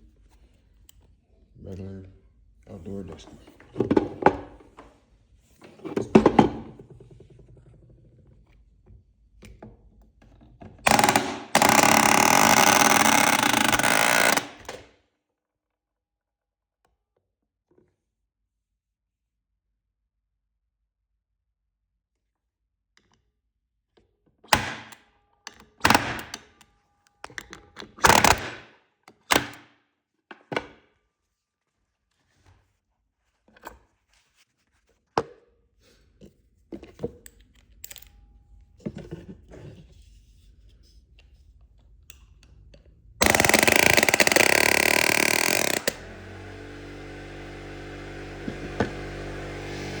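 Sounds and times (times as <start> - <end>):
pneumatic nailer hammering: 10.8 - 14.8, 25.8 - 26.4, 28.0 - 28.7, 43.2 - 50.0.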